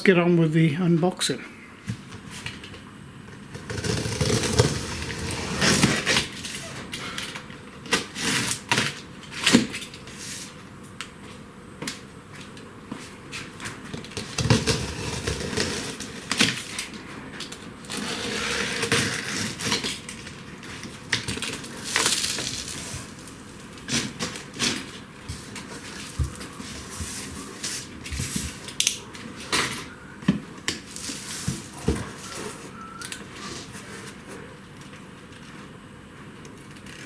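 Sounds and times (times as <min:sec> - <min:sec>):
packaging rustling and crinkling: 0:13.3 - 0:29.5, 0:30.8 - 0:34.3.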